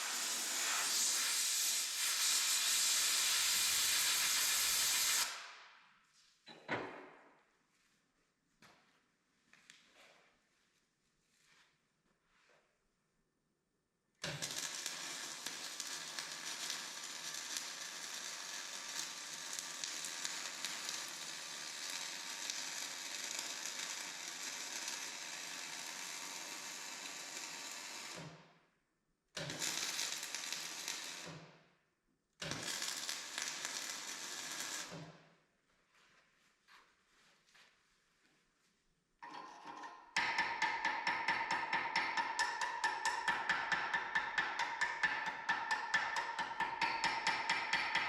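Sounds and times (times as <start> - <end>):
arc welding crackling sizzle: 0.0 - 5.5, 14.2 - 28.4, 29.4 - 31.4, 32.4 - 35.1.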